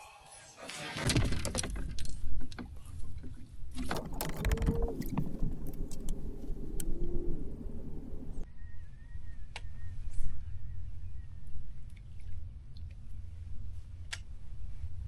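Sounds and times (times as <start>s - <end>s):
fishing gear knocking and rattling: 3.8s - 8.4s
low steady rumble: 3.9s - 8.4s.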